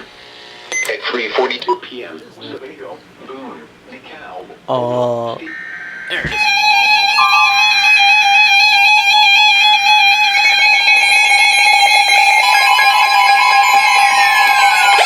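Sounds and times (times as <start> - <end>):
electronic alarm tone: 5.4 - 15.0
second alarm tone: 5.4 - 15.0.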